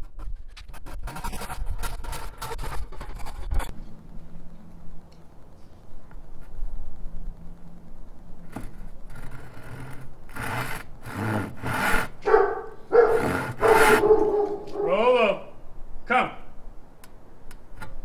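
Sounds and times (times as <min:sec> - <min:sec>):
dog barking: 0:12.2 - 0:15.1.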